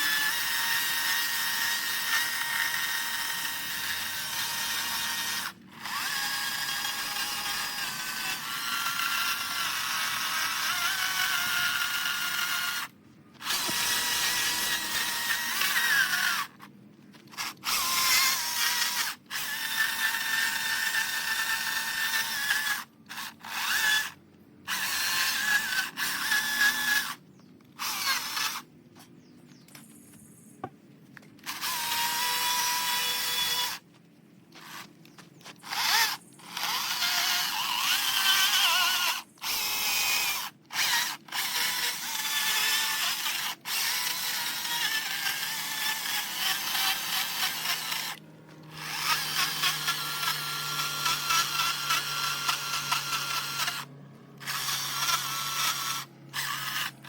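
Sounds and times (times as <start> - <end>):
power carving tool whining: 0.0 - 28.6, 31.4 - 33.8, 34.6 - 57.0.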